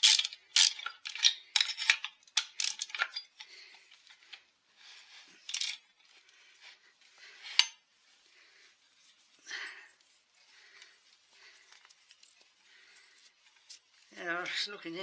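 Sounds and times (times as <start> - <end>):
metal parts clinking: 0.0 - 4.1, 5.4 - 6.0, 7.4 - 7.8.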